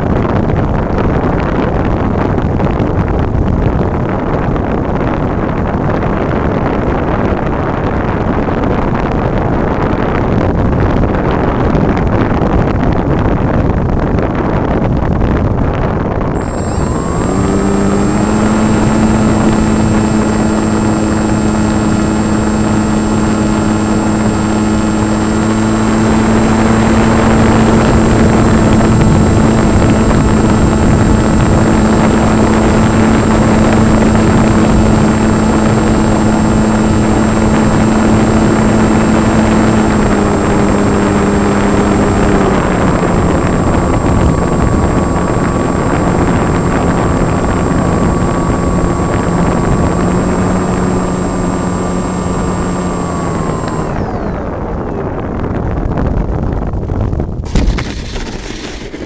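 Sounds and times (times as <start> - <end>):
wind rush: 0.0 - 59.0
electric model plane motor: 16.3 - 56.4, 57.5 - 59.0.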